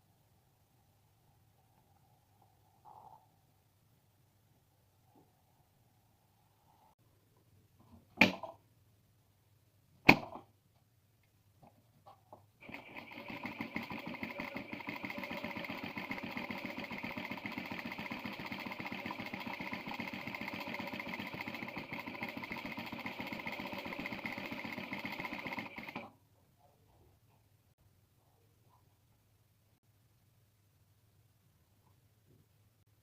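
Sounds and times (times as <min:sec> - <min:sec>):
electric sewing machine stitching: 0:12.6 - 0:26.1.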